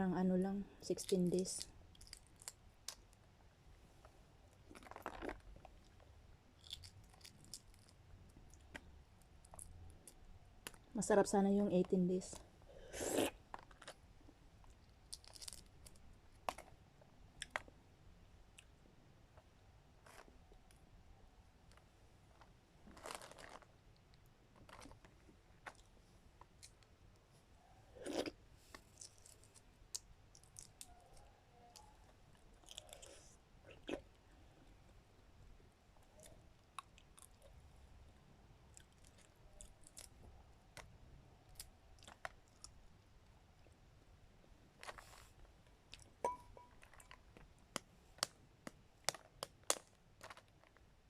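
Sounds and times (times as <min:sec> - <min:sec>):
food crunch: 0:04.7 - 0:06.0, 0:06.6 - 0:08.8, 0:13.0 - 0:14.0, 0:15.1 - 0:16.7, 0:22.4 - 0:23.8, 0:24.6 - 0:25.9, 0:48.2 - 0:50.8
ringing clink: 0:46.2 - 0:46.8.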